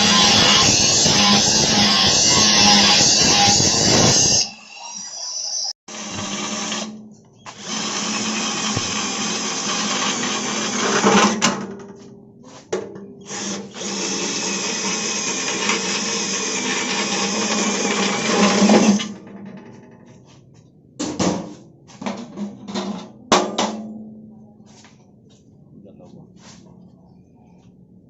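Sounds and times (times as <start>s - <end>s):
power tool running: 0.0s - 11.4s, 13.2s - 19.2s.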